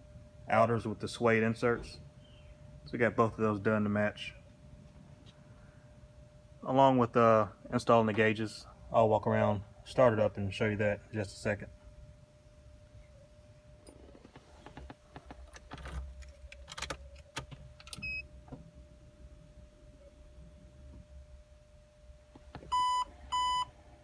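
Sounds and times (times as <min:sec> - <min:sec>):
car electronic beeps: 0:18.0 - 0:18.3, 0:22.7 - 0:23.7.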